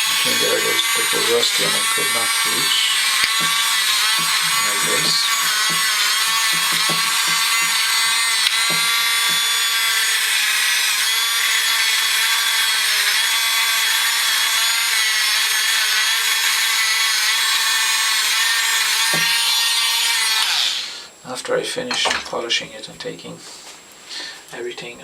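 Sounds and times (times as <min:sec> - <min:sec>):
tool scrubbing on metal: 0:00.0 - 0:09.8
rotary tool motor whine: 0:00.0 - 0:20.9.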